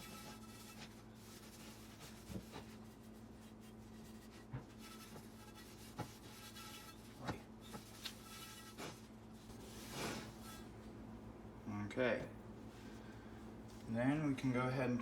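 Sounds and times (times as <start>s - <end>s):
cloth rubbing on skillet: 0.0s - 10.8s.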